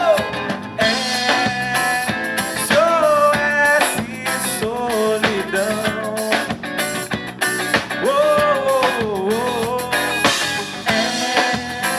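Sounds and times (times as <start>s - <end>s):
drums and guitar: 0.0s - 11.9s
man singing pop-rock song: 0.0s - 11.9s.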